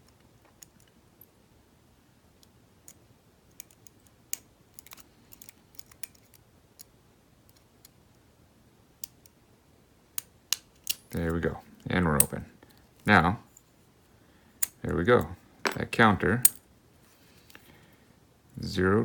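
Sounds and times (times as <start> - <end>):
lock pick metal clicks: 10.2 - 11.2.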